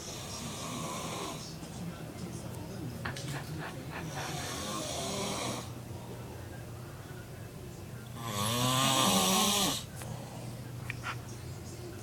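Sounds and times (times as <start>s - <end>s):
man snoring loudly: 8.2s - 9.8s.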